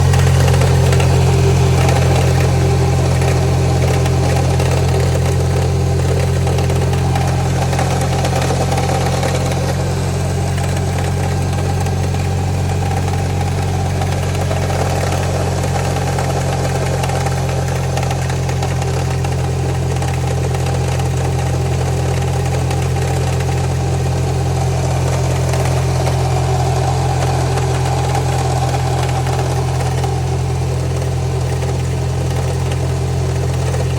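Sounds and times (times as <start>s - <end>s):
car engine idling: 0.0s - 33.9s.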